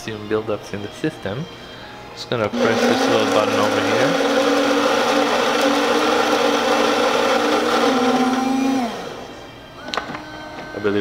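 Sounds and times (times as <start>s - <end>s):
coffee grinder motor running: 2.5s - 9.3s.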